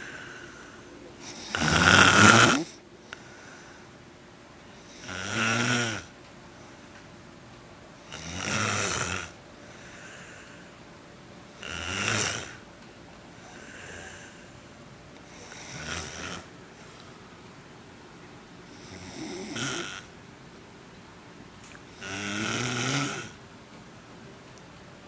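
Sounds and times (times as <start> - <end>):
soft breaths: 0.0 - 5.1, 9.6 - 12.6, 13.3 - 17.6
man snoring: 1.2 - 2.8, 4.9 - 6.1, 8.0 - 9.4, 11.6 - 12.6, 15.4 - 16.5, 18.8 - 20.1, 22.0 - 23.4.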